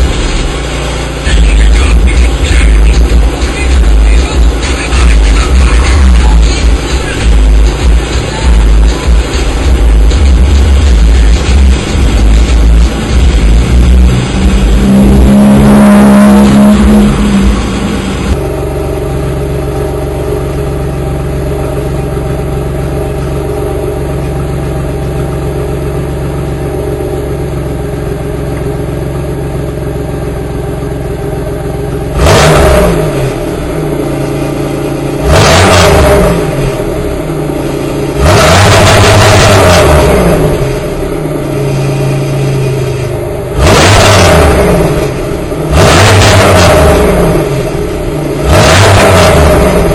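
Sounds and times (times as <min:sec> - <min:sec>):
car engine idling and revving: 0:00.0 - 0:49.9.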